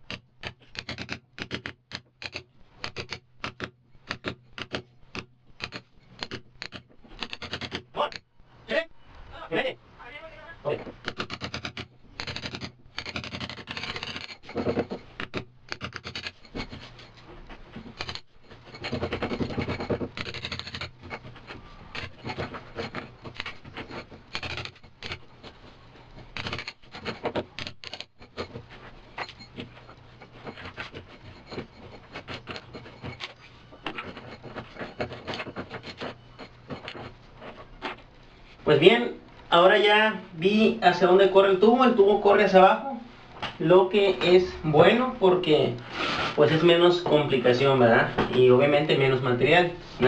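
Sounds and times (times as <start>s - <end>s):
mallet striking chisel: 0.0s - 8.2s, 11.0s - 16.9s
chisel grating and scraping: 0.0s - 8.4s, 10.7s - 42.6s, 43.6s - 47.8s.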